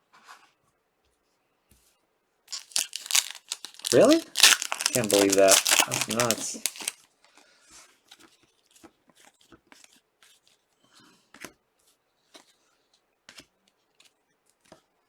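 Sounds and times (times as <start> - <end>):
trading cards rustling and clicking: 2.5 - 7.0.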